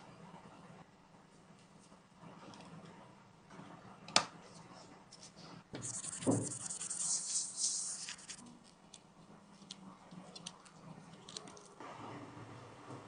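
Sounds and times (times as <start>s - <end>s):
hissing scrape: 5.8s - 8.4s.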